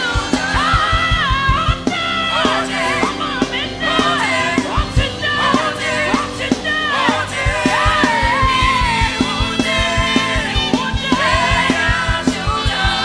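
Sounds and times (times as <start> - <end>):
worship band playing: 0.0 - 13.0.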